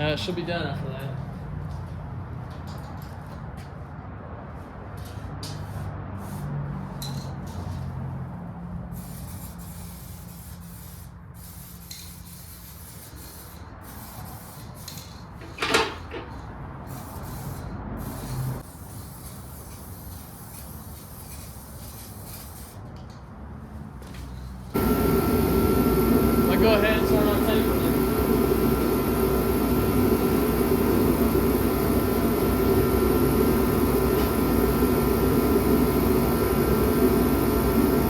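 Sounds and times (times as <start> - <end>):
spray can hissing: 8.9 - 15.2, 16.9 - 22.8.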